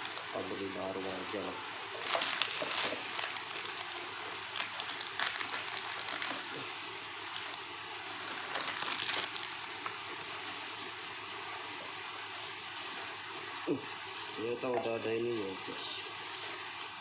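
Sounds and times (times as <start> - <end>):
plastic packaging crinkling: 0.0 - 0.4, 1.9 - 10.0
steady hiss: 0.0 - 17.0.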